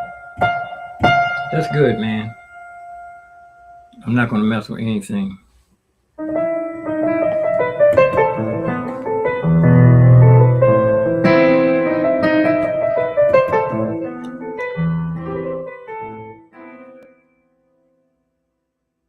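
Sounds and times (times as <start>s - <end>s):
electric piano chords: 0.0s - 4.6s, 6.2s - 17.8s.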